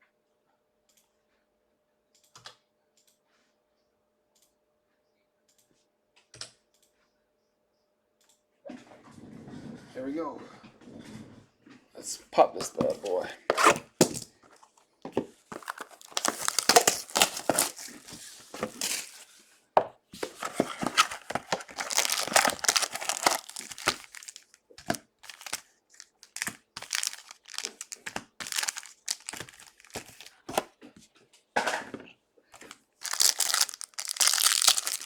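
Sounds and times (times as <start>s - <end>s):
packaging tearing and crinkling: 13.5s - 14.3s, 15.5s - 19.3s, 20.2s - 30.6s, 32.6s - 35.0s.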